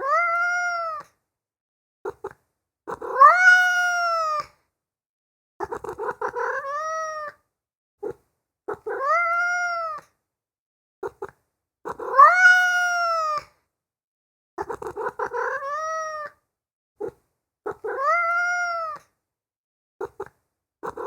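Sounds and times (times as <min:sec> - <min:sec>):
cat meowing: 0:00.0 - 0:01.1, 0:02.9 - 0:04.5, 0:05.6 - 0:07.4, 0:08.7 - 0:10.1, 0:11.9 - 0:13.5, 0:14.6 - 0:16.4, 0:17.7 - 0:19.1.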